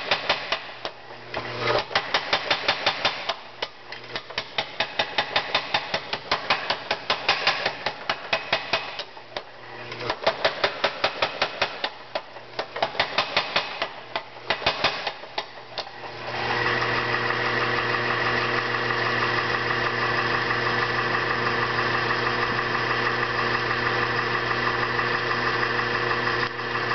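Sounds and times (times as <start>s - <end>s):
hammer drive hum: 0.0s - 26.9s
power hammer blows: 12.6s - 15.6s.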